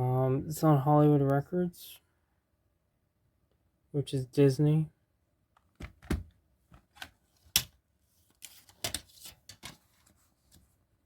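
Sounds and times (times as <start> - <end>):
plastic case clicks and knocks: 5.6 - 7.0.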